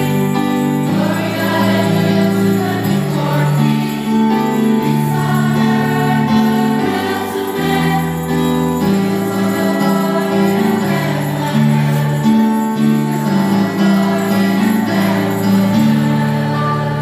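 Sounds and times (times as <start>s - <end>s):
festive holiday song with sleigh bells: 0.0s - 17.0s.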